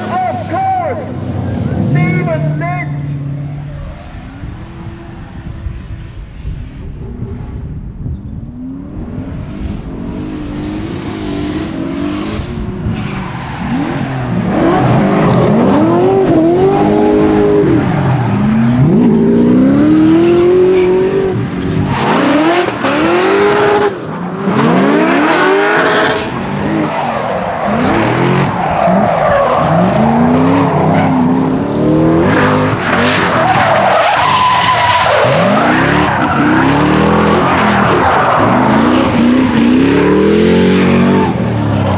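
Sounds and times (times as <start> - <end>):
car engines revving: 0.0 - 41.9
tyres screeching: 32.3 - 39.9.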